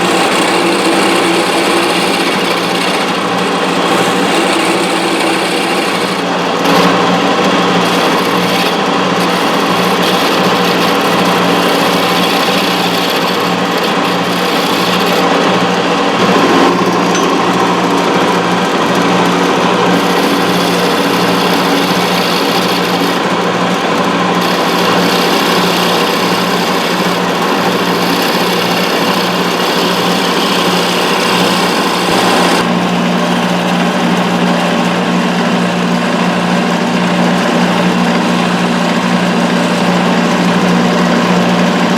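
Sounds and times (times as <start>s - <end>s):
lathe motor hum: 0.0s - 41.9s.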